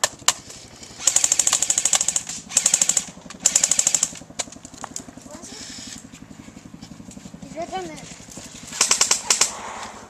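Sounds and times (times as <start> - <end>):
airsoft gun full-auto bursts: 0.9 - 4.2, 8.7 - 9.6.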